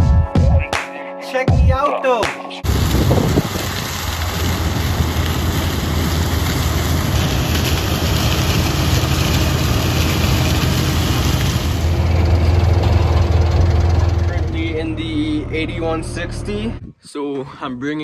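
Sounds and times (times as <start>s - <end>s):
tractor engine humming: 2.6s - 16.8s.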